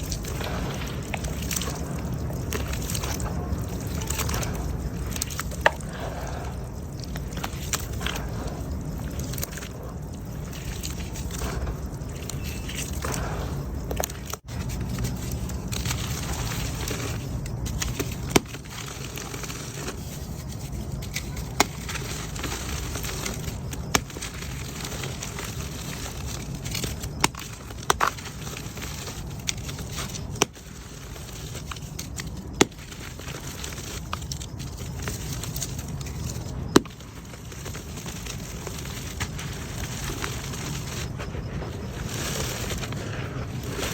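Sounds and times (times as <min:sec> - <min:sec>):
mud crumbling and crackling: 0:00.0 - 0:43.9.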